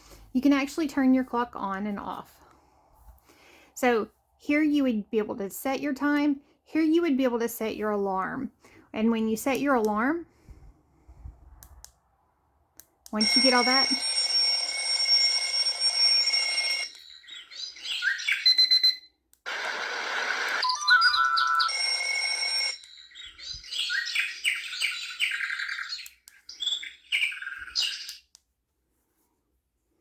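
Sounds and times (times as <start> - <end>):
electronic birdsong chirps: 13.2 - 14.1, 15.8 - 19.2, 20.3 - 28.2
electronic alarm tone: 13.2 - 24.4
electronic noise: 17.0 - 22.0.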